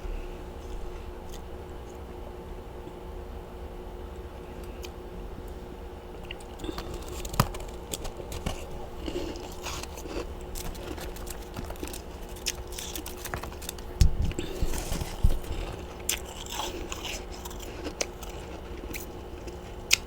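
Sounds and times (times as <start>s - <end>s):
steady low hum: 0.0s - 20.0s
frost being chewed crunching: 0.2s - 2.0s, 6.1s - 20.0s.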